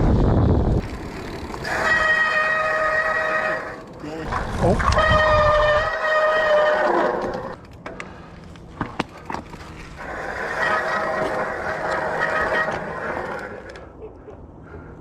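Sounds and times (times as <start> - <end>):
bicycle brake squealing: 0.9 - 7.6, 10.0 - 13.7.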